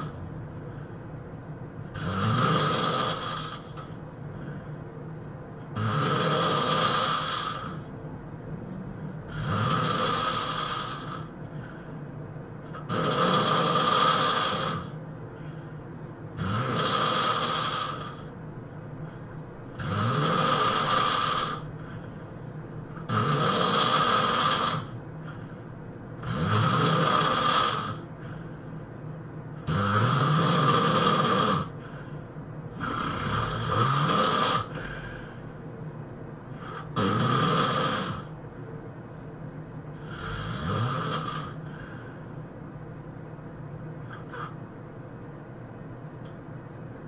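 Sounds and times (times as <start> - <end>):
person snoring loudly: 0.0 - 0.2, 1.9 - 4.6, 5.7 - 7.9, 9.3 - 11.3, 12.7 - 15.0, 16.4 - 18.3, 19.7 - 21.9, 23.0 - 25.4, 26.2 - 28.4, 29.6 - 32.0, 32.7 - 35.4, 36.6 - 38.4, 40.0 - 42.1, 44.1 - 44.6.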